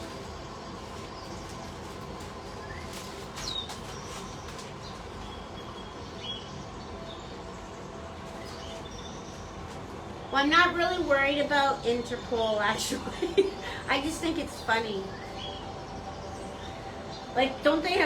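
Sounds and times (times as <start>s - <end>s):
steady background hum: 0.0s - 18.0s.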